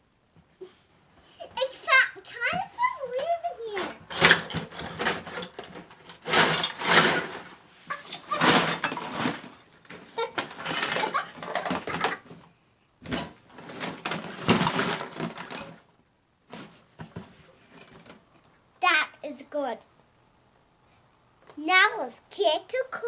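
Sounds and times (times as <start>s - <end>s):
plastic toys rustling and clattering: 0.6s - 18.6s.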